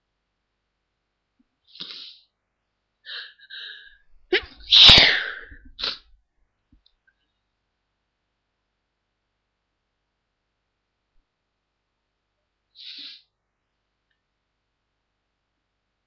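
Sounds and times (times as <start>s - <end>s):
person sneezing: 3.1s - 6.0s.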